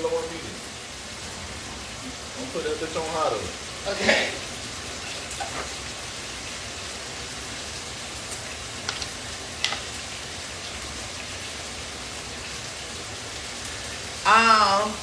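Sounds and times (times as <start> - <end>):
burgers sizzling in a frying pan: 0.0 - 15.0.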